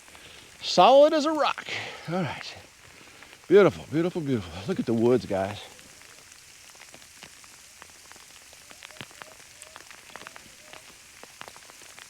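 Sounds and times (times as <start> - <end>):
sleet hissing: 0.0 - 6.1.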